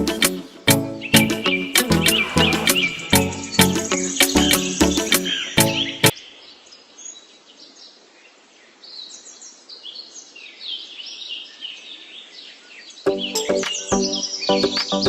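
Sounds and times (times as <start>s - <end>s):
background music: 0.0s - 6.1s, 13.1s - 15.0s
birds chirping: 0.8s - 7.9s, 8.9s - 15.0s.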